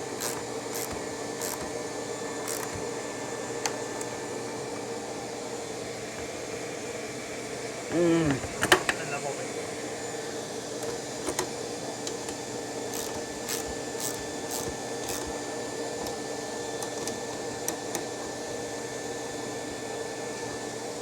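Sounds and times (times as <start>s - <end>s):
machine hum: 0.0s - 16.2s.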